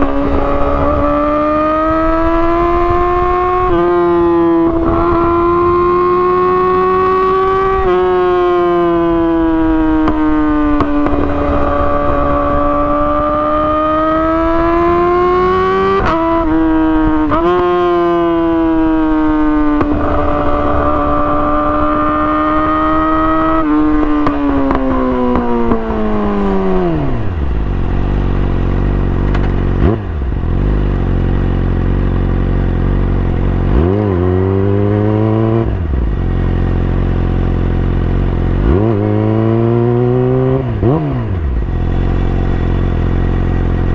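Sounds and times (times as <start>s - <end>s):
motorcycle throttle blips: 0.0s - 5.4s, 6.3s - 18.8s, 19.4s - 43.9s
motorcycle engine revving: 0.0s - 43.9s
motorcycle gear changes: 23.5s - 32.0s.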